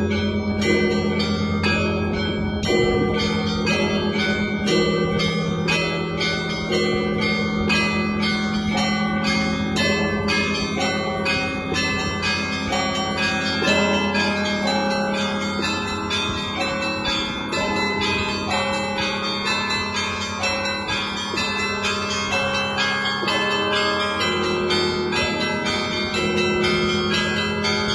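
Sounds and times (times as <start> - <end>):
large bell humming: 0.0 - 27.9
small church bells ringing: 0.0 - 27.9.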